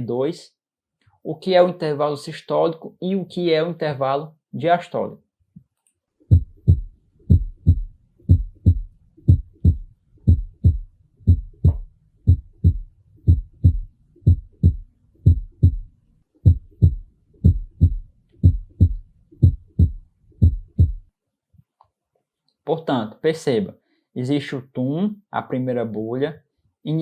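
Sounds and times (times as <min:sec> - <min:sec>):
heartbeat: 0:06.3 - 0:21.1.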